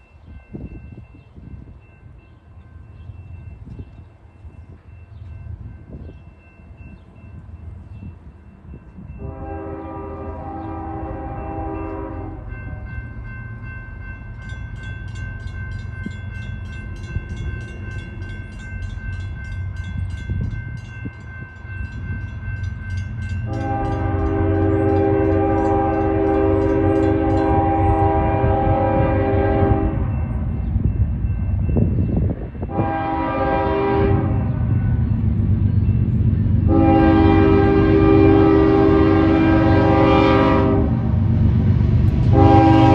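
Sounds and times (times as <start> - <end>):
train rumble: 0.0 - 42.9
locomotive horn blasts: 9.2 - 12.9, 23.4 - 30.2, 32.7 - 34.6, 36.7 - 41.1, 42.3 - 42.9
high steady ringing: 11.4 - 28.0.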